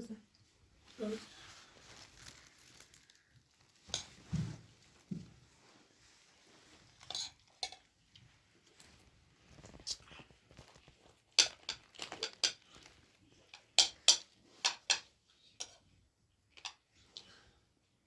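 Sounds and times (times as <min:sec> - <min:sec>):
spoons and dishes clinking: 0:07.0 - 0:07.9, 0:11.3 - 0:12.9, 0:13.5 - 0:15.9.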